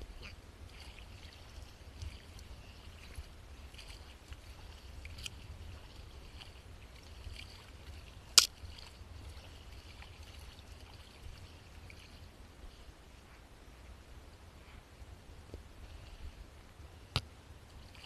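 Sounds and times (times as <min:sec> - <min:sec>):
paddle dipping in water: 0:00.0 - 0:13.5
water trickling and dripping: 0:00.1 - 0:12.8.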